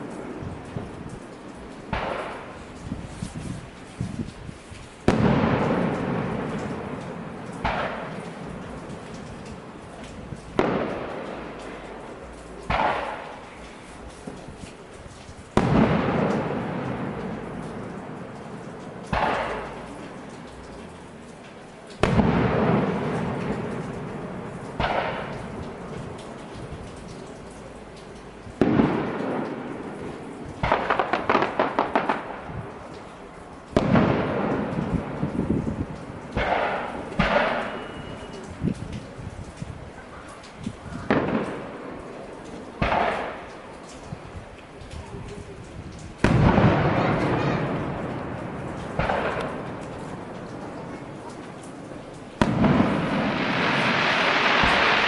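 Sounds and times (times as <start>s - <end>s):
faint firework pops: 0.1s - 4.4s, 5.0s - 39.1s, 40.3s - 55.0s
firework booms with rumble: 1.9s - 3.0s, 5.0s - 11.6s, 12.6s - 13.3s, 15.5s - 20.1s, 22.0s - 26.9s, 28.5s - 32.8s, 33.7s - 38.2s, 40.8s - 42.0s, 42.8s - 43.5s, 46.1s - 50.9s, 52.4s - 55.0s.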